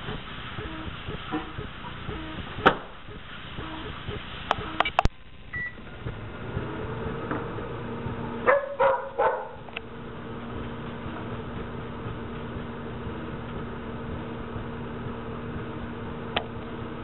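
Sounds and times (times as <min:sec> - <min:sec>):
microwave oven humming: 0:00.0 - 0:17.0
dog barking: 0:08.4 - 0:09.7.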